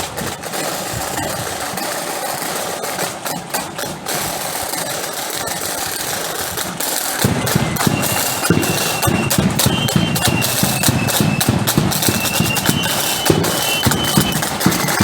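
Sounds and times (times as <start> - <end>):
dense rattling noise: 5.7 - 15.0
bass drum beats: 7.2 - 15.0
flute melody: 7.2 - 15.0.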